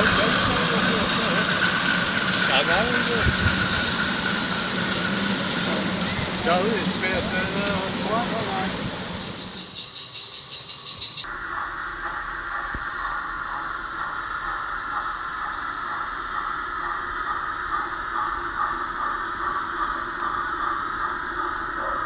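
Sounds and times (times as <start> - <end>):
steam locomotive hissing: 0.0 - 22.0.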